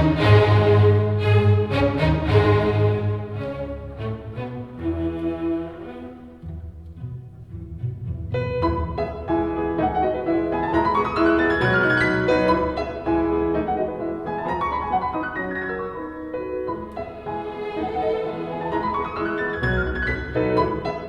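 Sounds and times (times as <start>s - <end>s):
bowed strings: 0.0s - 21.0s.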